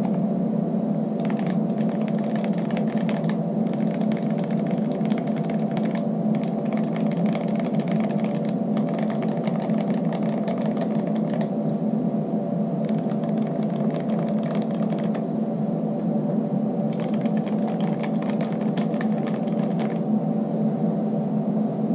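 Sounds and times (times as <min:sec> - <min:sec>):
mechanical keyboard typing: 0:00.0 - 0:00.2, 0:01.2 - 0:11.5, 0:12.8 - 0:15.2, 0:16.9 - 0:20.0
steady low hum: 0:00.0 - 0:21.9.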